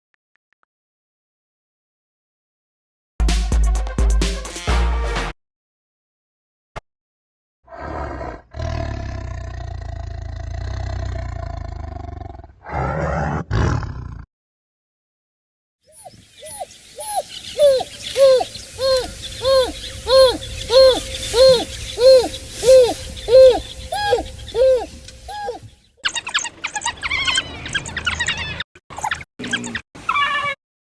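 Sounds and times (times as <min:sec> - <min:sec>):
low rumbling growl: 0:08.6 - 0:12.6
repeated hooting calls: 0:15.9 - 0:25.7.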